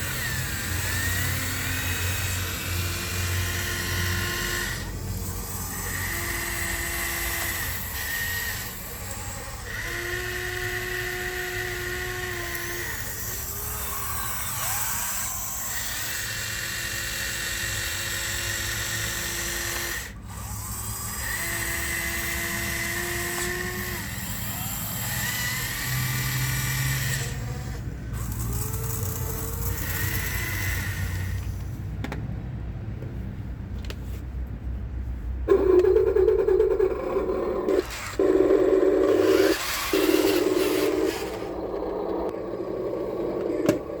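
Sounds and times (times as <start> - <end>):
small electric motors whining: 0.0 - 31.8, 35.4 - 44.0.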